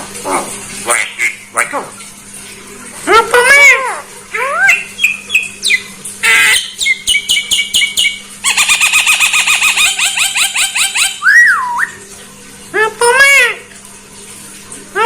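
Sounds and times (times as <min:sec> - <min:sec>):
myna whistles and chirps: 0:06.5 - 0:08.2, 0:09.4 - 0:12.0.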